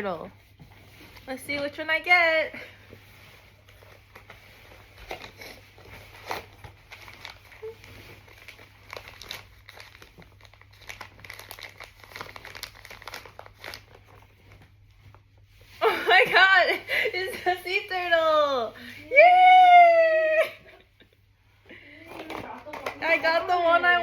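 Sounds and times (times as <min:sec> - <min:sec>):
plastic wrapper crinkling: 0:03.5 - 0:15.4
wrapper tearing: 0:03.7 - 0:14.4.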